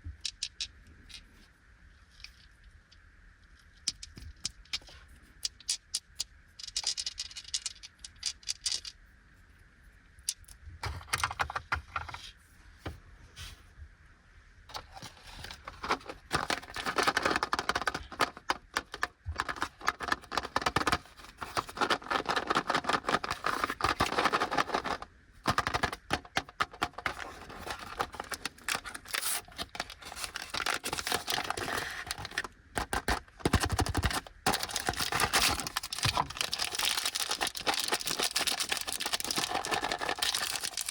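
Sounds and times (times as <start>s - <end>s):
packaging clicks and taps: 14.7s - 40.9s
wrappers crinkling: 14.8s - 40.9s.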